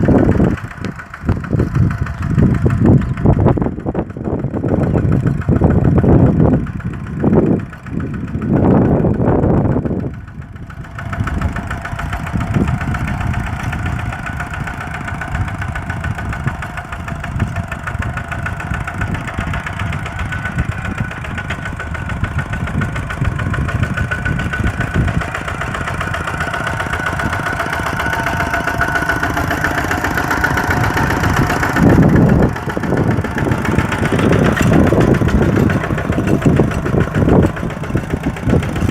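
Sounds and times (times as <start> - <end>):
diesel tractor engine running: 0.0 - 38.9.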